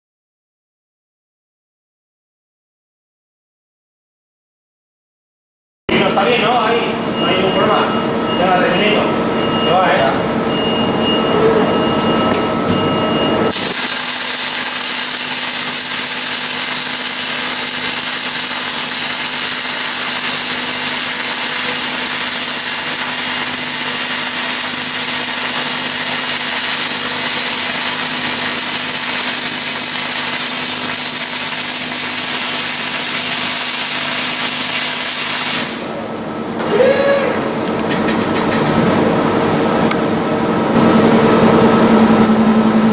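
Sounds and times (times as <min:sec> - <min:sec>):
welding arc hissing: 0:13.4 - 0:35.9.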